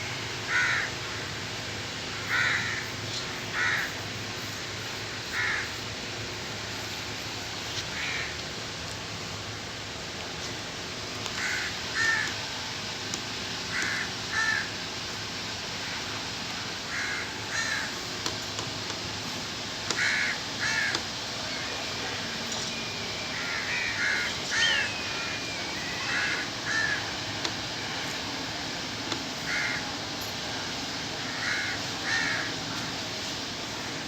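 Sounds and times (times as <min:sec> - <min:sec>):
bird giving harsh calls: 0:23.3 - 0:27.0.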